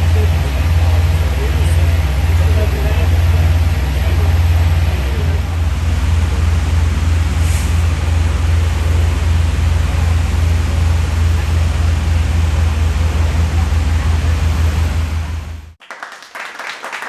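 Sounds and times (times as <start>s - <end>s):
fire engine pumps rumbling: 0.0s - 15.8s
rushing hiss of water streams: 5.8s - 10.0s.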